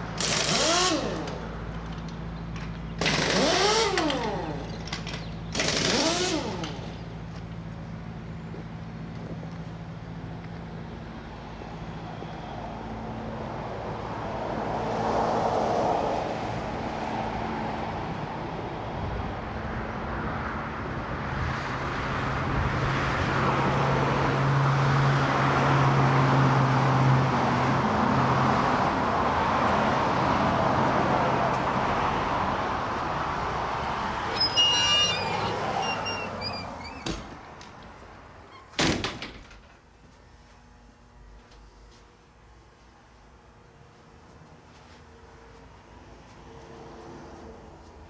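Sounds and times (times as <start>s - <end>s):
vehicle engine humming: 0.0s - 13.3s, 28.0s - 38.8s
road traffic noise: 0.0s - 48.0s.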